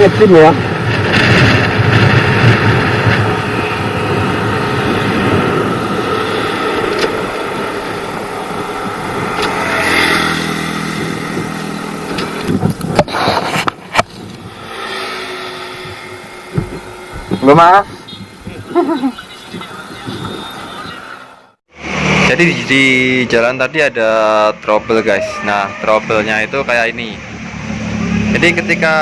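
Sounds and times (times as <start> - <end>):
wind noise while riding: 0.0 - 21.1
motorcycle engine: 0.0 - 23.6, 24.2 - 29.0
sharp knocks: 15.8 - 17.5.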